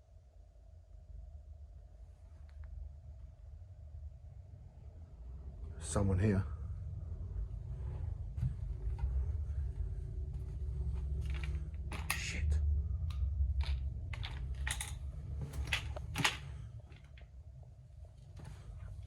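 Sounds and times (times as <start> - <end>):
low rumble: 0.6 - 19.0
sharp clicks and crunches: 11.0 - 12.4, 13.1 - 17.3.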